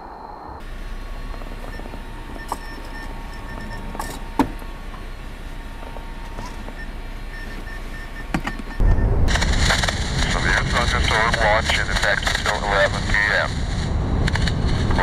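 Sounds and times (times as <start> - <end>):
car interior vehicle noise: 0.0 - 15.0.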